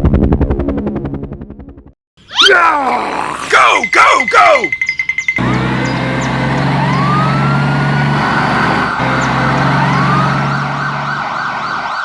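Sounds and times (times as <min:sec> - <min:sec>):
emergency vehicle siren wailing: 0:03.5 - 0:12.0.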